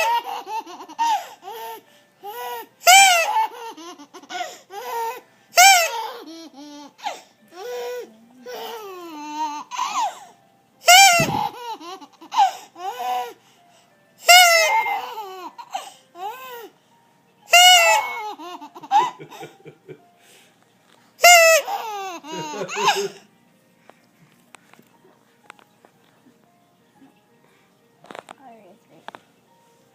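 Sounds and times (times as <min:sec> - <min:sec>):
small child shrieking laughter: 0:10.9 - 0:11.6, 0:17.5 - 0:19.4
child giggling: 0:18.4 - 0:19.9, 0:21.8 - 0:23.2.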